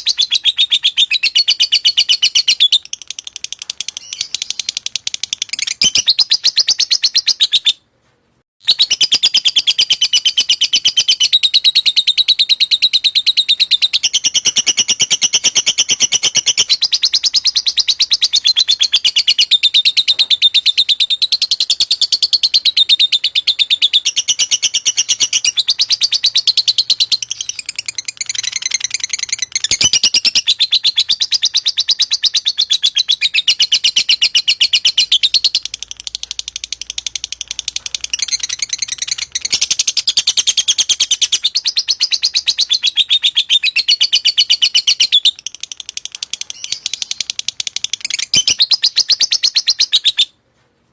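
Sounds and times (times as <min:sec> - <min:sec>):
lovebird rapid shrill chirps: 0:00.0 - 0:07.8, 0:08.6 - 0:50.3.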